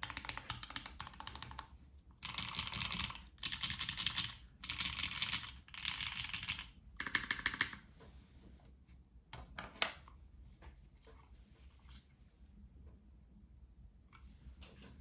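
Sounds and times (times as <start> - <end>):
mechanical keyboard typing: 0.0 - 7.8.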